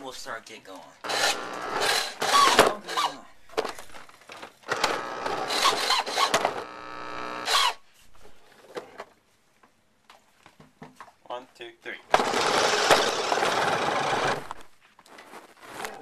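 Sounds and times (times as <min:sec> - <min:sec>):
toy car motor whirring: 0:01.1 - 0:03.2, 0:04.7 - 0:07.8, 0:12.2 - 0:14.6.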